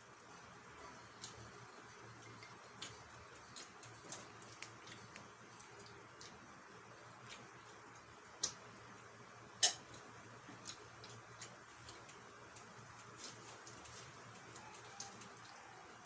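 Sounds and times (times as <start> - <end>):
clicks and taps of eating: 0.8 - 1.5, 2.2 - 8.7, 9.6 - 16.0.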